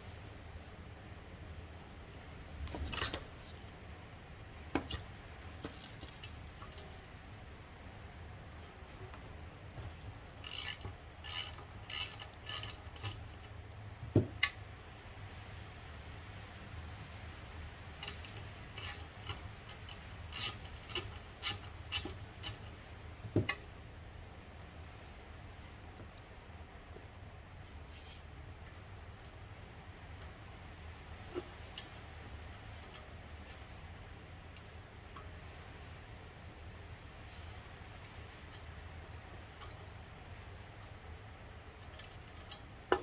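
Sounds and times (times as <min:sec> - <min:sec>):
light clicks and scrapes: 0:00.0 - 0:14.6, 0:16.8 - 0:23.8, 0:25.5 - 0:29.4, 0:37.2 - 0:43.0.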